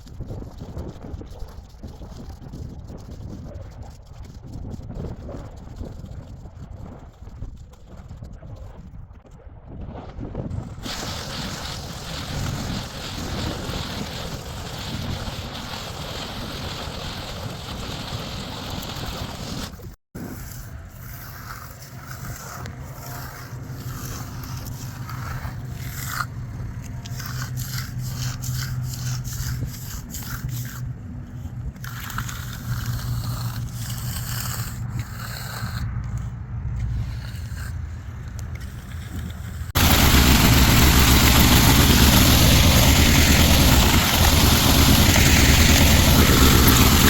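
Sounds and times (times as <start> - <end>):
rough scraping and rushing: 10.3 - 47.0
tools scraping and knocking concrete: 20.2 - 39.8
truck engine hum: 39.5 - 47.0.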